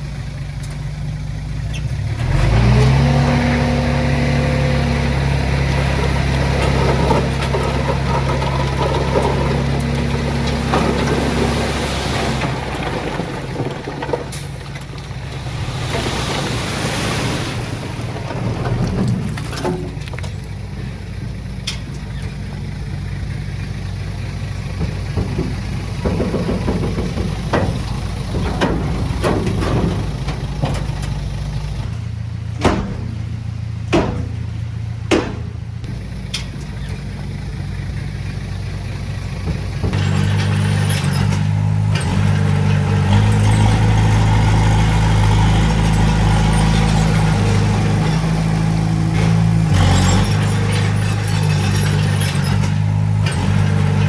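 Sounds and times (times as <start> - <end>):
diesel engine running: 0.0 - 54.0
sharp knocks: 24.7 - 32.0, 32.6 - 35.9.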